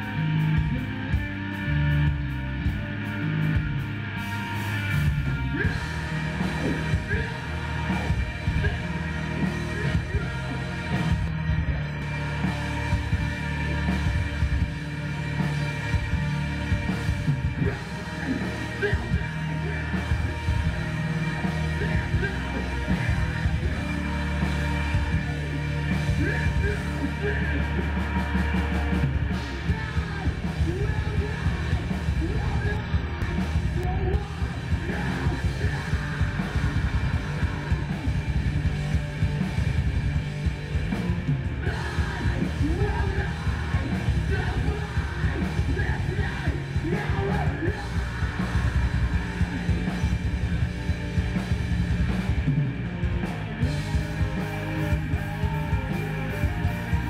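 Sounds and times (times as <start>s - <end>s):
rock music with yelled vocals: 0.0s - 57.0s.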